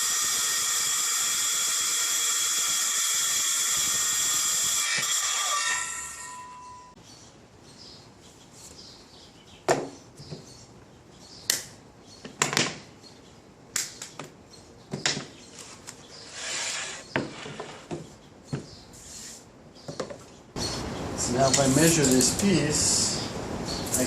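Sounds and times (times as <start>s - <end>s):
wooden knocks and clunks: 9.7s - 10.5s, 14.9s - 15.4s, 17.1s - 18.8s, 19.9s - 20.3s.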